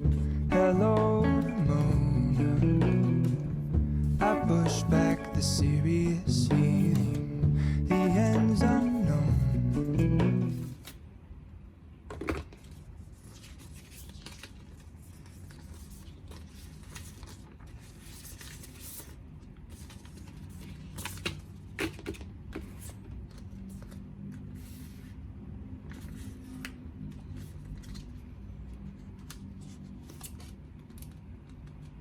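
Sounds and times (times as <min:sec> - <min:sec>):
packaging rustling and tearing: 0:13.2 - 0:24.5.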